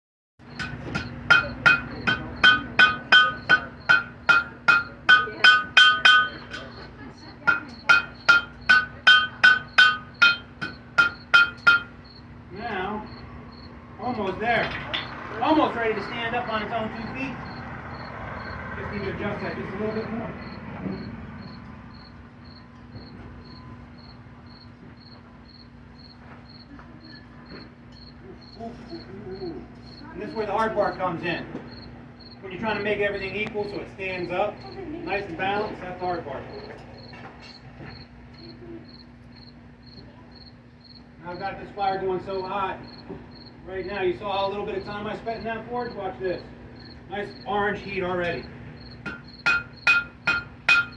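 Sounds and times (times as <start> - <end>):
cricket chirping: 0.4 - 50.9
hammer striking metal on anvil: 0.5 - 6.8, 7.5 - 12.1, 49.0 - 50.9.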